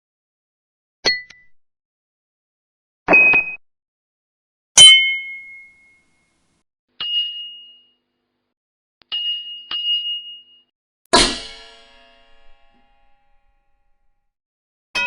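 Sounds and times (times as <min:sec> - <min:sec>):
metal clang ringing: 0:04.8 - 0:06.0
metal dings: 0:04.8 - 0:06.2.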